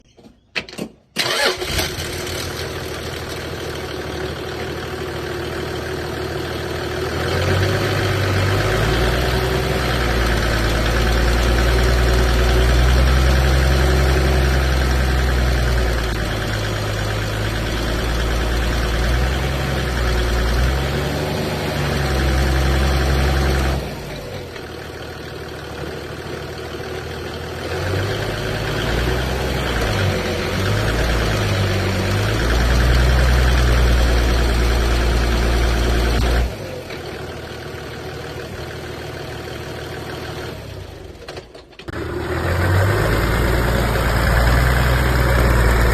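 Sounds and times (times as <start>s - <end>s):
diesel engine revving under load: 1.2s - 38.0s, 41.9s - 45.9s.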